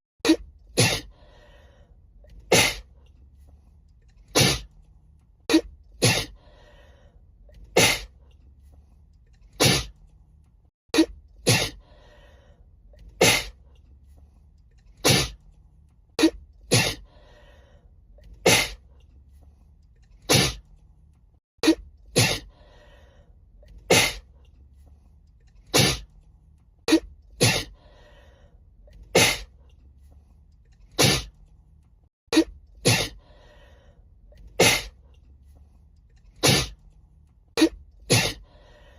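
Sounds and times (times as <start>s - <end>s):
woman sneezing: 0.8s - 1.1s, 32.8s - 33.2s, 34.6s - 35.0s, 37.6s - 38.4s
faint breaths: 1.0s - 5.3s, 6.2s - 10.1s, 11.7s - 15.6s, 16.9s - 20.0s, 22.4s - 25.6s, 27.6s - 30.8s, 33.1s - 36.9s, 38.3s - 38.9s.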